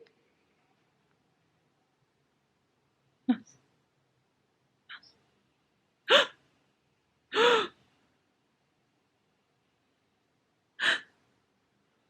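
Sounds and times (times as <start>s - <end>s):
woman gasping: 7.3s - 7.8s, 10.8s - 11.2s.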